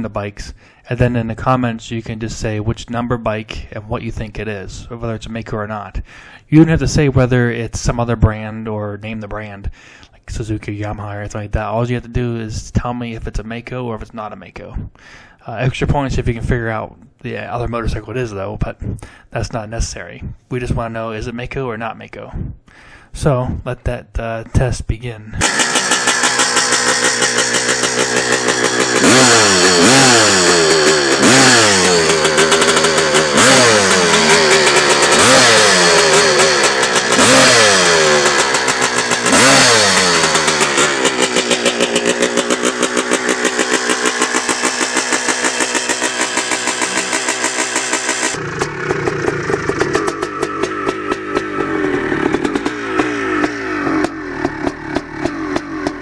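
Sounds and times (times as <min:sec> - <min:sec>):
dirt bike engine revving: 0:25.4 - 0:56.0
engine running at low revs: 0:25.4 - 0:56.0.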